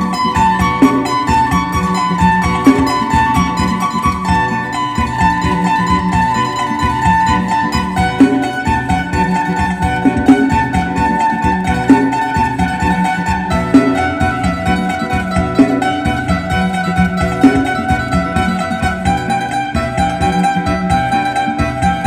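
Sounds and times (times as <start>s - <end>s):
plucked lute melody: 0.0s - 22.0s
steady beat: 0.0s - 22.0s.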